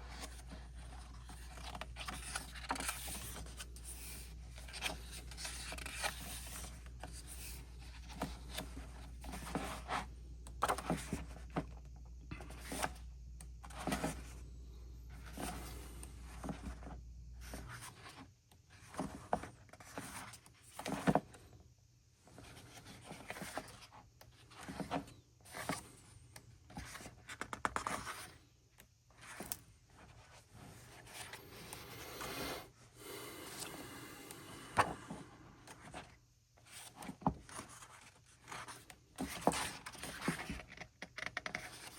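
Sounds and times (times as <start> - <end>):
paper pages rustling: 0.1 - 11.3.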